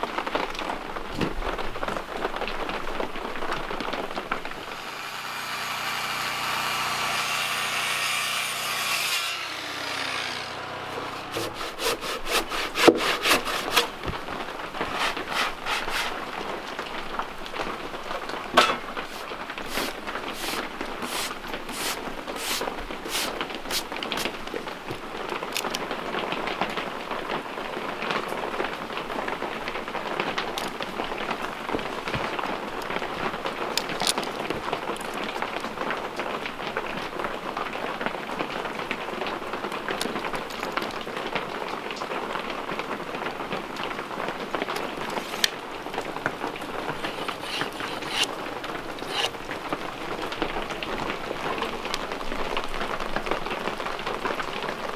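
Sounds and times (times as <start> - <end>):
saw cutting timber: 4.6 - 16.3, 18.5 - 24.4, 45.0 - 45.6, 46.2 - 49.8
rasping saw strokes and knocks: 4.8 - 16.2, 18.5 - 24.4, 45.0 - 45.6, 46.3 - 49.4.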